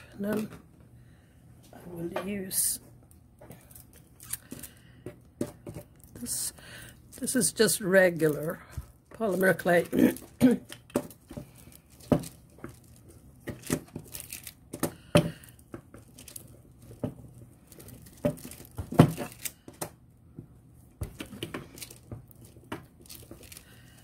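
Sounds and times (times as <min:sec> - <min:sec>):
wrapping crinkling and tearing: 0:03.6 - 0:04.8, 0:05.9 - 0:19.8, 0:21.1 - 0:24.0.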